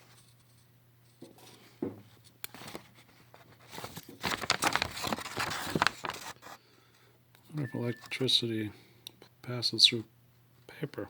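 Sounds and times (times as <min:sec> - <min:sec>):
paper crinkling and rustling: 0:02.5 - 0:06.6.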